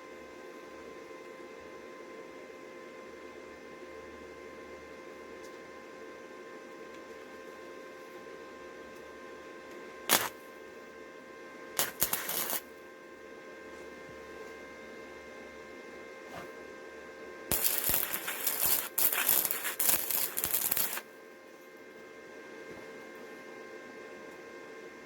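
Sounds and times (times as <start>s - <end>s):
welder arc crackling: 10.1s - 10.4s, 11.8s - 12.8s, 17.5s - 21.2s.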